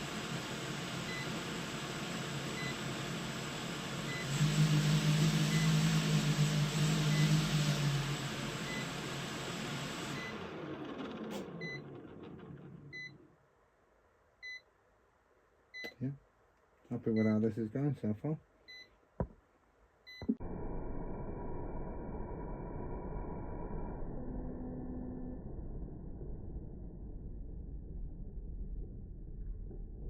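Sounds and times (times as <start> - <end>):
quadcopter motors spinning: 4.1 - 9.2.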